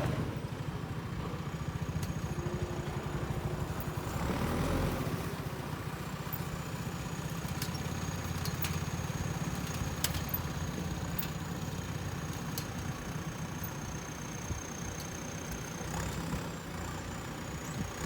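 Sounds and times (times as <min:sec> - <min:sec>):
diesel engine idling: 0:00.0 - 0:18.0.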